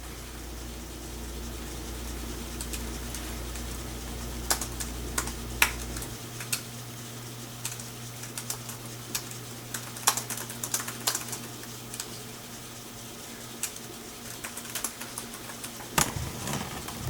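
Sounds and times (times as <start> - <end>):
low steady hum: 0.0 - 8.5.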